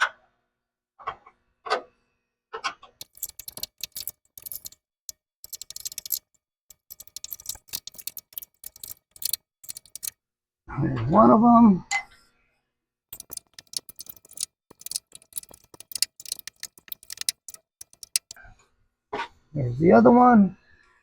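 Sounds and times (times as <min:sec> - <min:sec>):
wrench clicking against nuts: 0:03.0 - 0:04.8, 0:05.4 - 0:10.1, 0:13.2 - 0:18.4.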